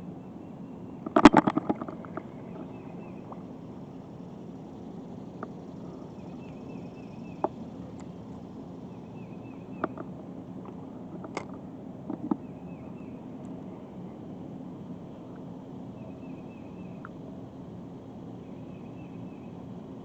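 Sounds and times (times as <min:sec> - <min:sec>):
low outdoor hum: 0:00.0 - 0:20.0
faint high chirps: 0:01.9 - 0:07.6.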